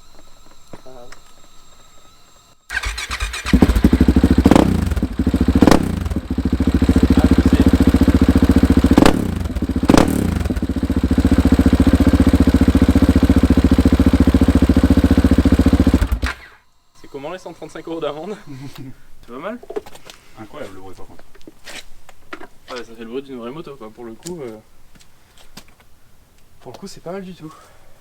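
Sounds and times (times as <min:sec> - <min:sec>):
motorcycle engine revving and idling: 0:02.7 - 0:16.4.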